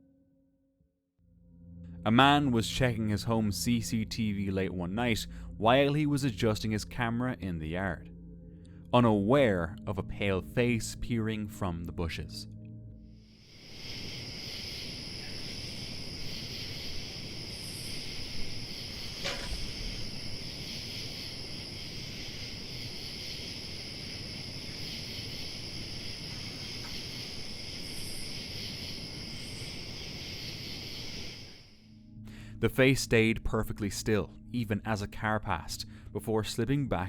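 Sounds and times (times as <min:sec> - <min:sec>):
crickets chirring: 0:13.0 - 0:32.2.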